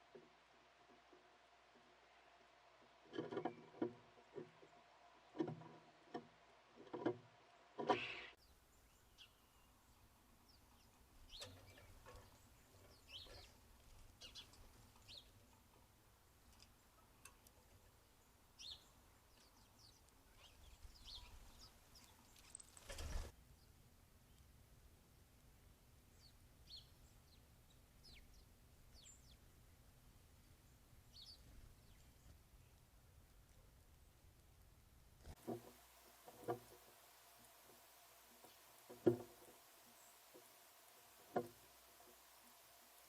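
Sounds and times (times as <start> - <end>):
small birds chirping: 7.8 - 24.6, 26.1 - 29.8, 30.4 - 33.7, 35.2 - 43.0.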